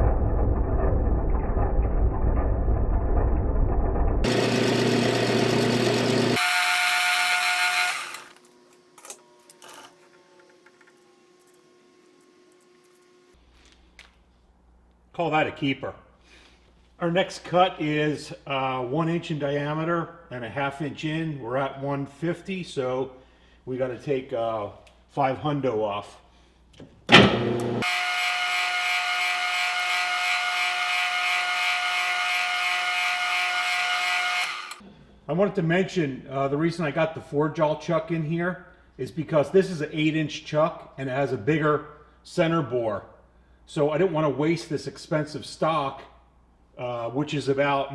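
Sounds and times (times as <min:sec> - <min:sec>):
metal lathe running: 0:04.2 - 0:13.0, 0:27.3 - 0:34.8.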